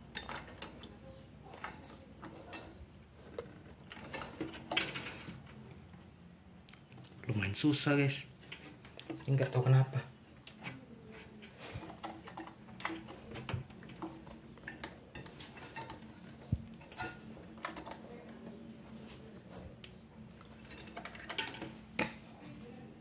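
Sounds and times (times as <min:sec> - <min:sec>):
metal and plastic clicks and scrapes: 0:10.5 - 0:22.1.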